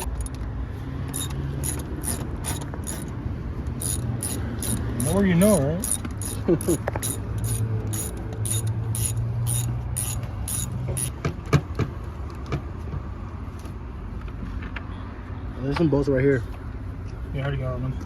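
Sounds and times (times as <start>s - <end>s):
hand ratchet clicking: 1.0s - 3.2s, 3.8s - 11.2s
tool clinks: 1.1s - 3.2s, 5.8s - 11.1s.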